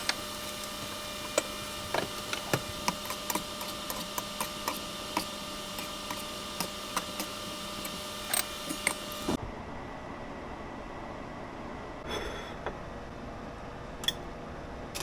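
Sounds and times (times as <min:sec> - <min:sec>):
electrical hum: 0:00.0 - 0:15.0.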